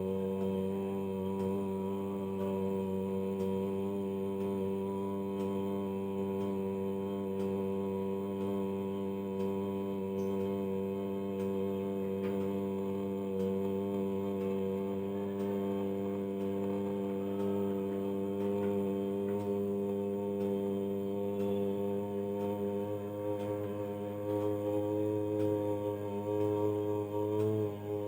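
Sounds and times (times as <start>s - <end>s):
faint ticks: 0.0s - 28.0s
low chanted drone: 0.0s - 28.0s.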